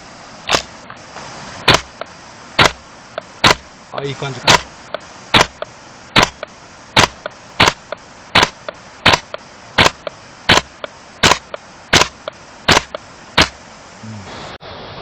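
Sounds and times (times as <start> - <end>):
airsoft rifle shots cracking: 0.5 - 0.8, 1.6 - 2.8, 3.4 - 3.7, 4.5 - 4.7, 5.3 - 13.6.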